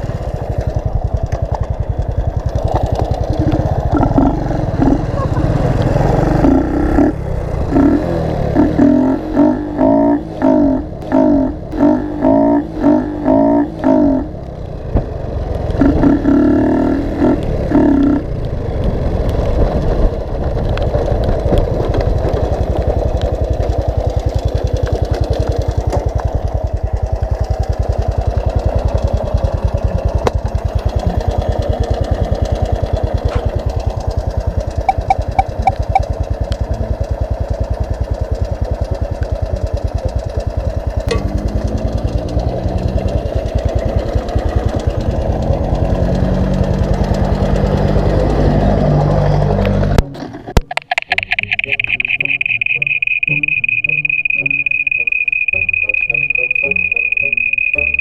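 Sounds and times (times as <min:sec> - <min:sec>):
motorcycle engine revving: 0:00.0 - 0:58.0
short beeps: 0:34.9 - 0:36.1, 0:50.9 - 0:58.0.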